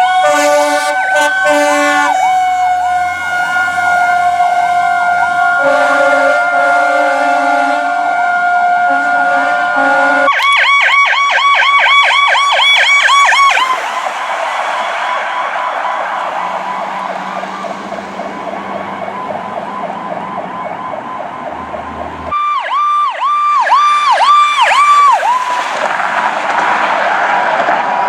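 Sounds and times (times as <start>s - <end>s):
road noise: 0.0s - 28.0s
whooping siren: 0.0s - 28.0s
siren pulsing rapidly: 8.2s - 26.2s.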